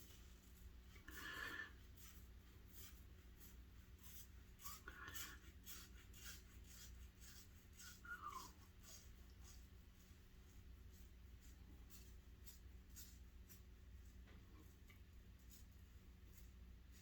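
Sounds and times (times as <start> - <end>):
razor scraping stubble: 0.1 - 9.7.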